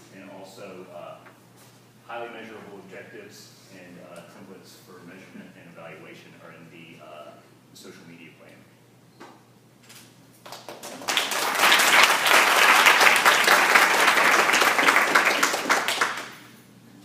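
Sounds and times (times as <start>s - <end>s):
audience applauding: 10.4s - 16.5s.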